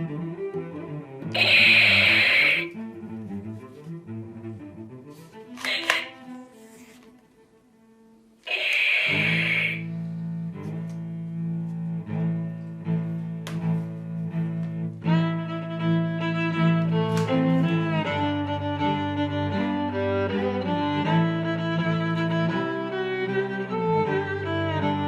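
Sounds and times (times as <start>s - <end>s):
low bowed strings: 0.0s - 1.6s, 2.2s - 8.2s, 9.8s - 25.0s
short hiss: 1.4s - 2.7s, 8.5s - 9.8s.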